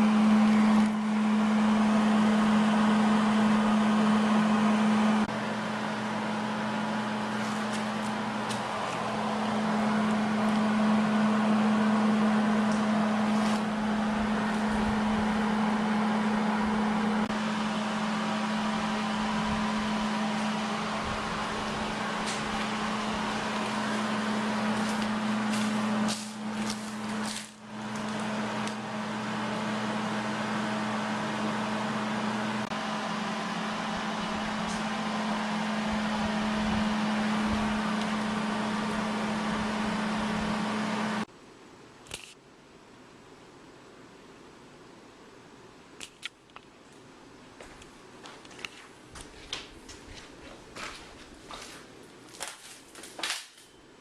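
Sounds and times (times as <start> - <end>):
welder hum: 0.0 - 41.3
welding arc crackling: 21.2 - 28.8.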